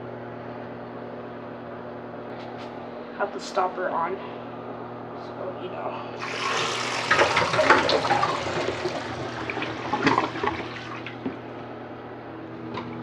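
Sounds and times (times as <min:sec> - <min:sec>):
toilet flushing: 0:06.2 - 0:11.6.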